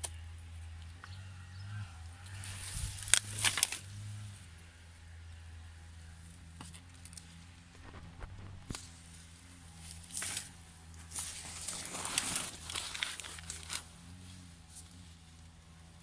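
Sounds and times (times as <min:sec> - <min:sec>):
low steady hum: 0:00.0 - 0:16.0
crackling and rustling: 0:02.3 - 0:04.0, 0:06.4 - 0:15.7.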